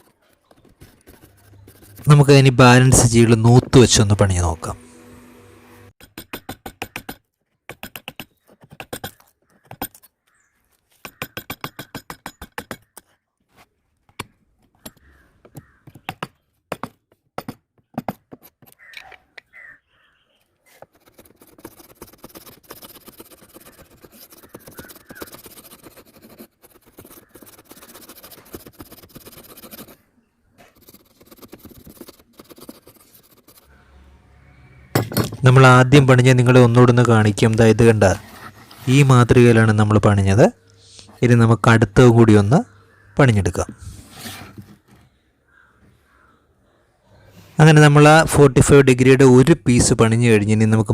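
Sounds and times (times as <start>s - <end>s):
wood chisel scraping: 0.0s - 19.7s, 20.3s - 34.0s, 34.9s - 39.7s, 43.6s - 45.2s.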